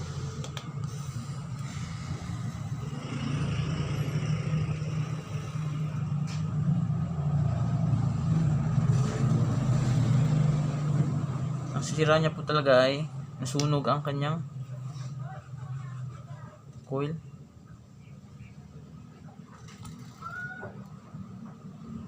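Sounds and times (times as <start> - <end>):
motorcycle engine rumbling: 0.0 - 16.5.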